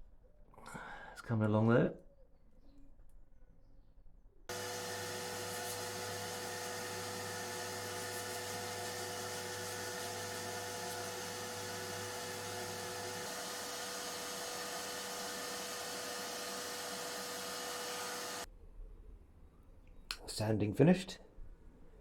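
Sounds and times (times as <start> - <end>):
electric power tool motor running: 4.5 - 18.5.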